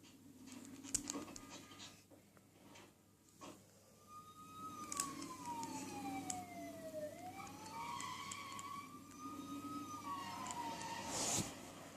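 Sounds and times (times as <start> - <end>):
siren-like wail: 3.8 - 11.7.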